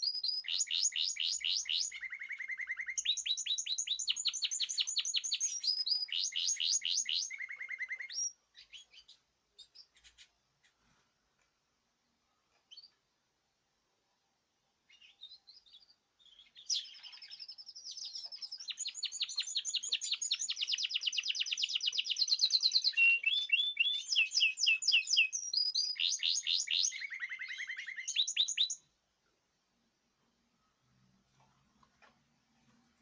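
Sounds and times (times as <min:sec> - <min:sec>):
songbird singing trills: 0:00.0 - 0:10.4, 0:14.9 - 0:29.0.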